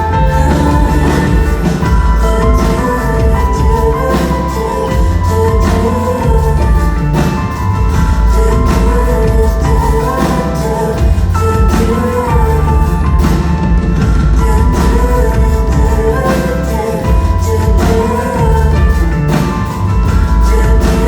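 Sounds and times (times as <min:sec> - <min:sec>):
heavy bass: 0:00.0 - 0:21.0
steady drum beat: 0:00.0 - 0:21.0.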